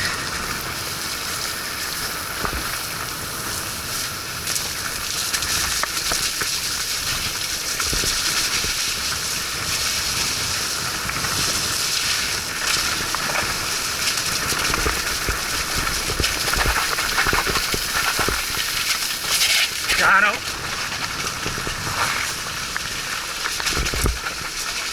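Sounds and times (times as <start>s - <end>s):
bike spraying through mud: 0.0s - 24.9s.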